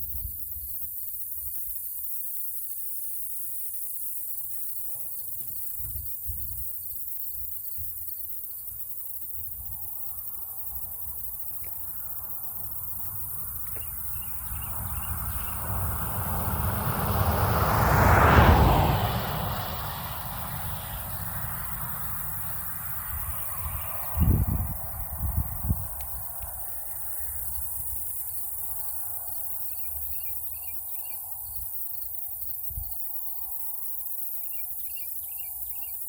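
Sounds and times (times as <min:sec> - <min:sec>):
constant high hiss: 0:00.0 - 0:17.6, 0:19.2 - 0:36.0
insect chirping: 0:00.0 - 0:36.0.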